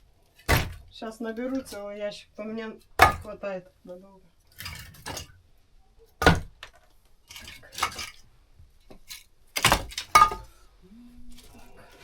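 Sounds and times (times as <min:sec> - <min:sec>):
firewood logs clunking: 0:00.3 - 0:01.8, 0:02.9 - 0:03.4, 0:06.2 - 0:08.2, 0:08.9 - 0:10.6
wood clattering and rustling: 0:04.5 - 0:05.4, 0:06.2 - 0:10.6.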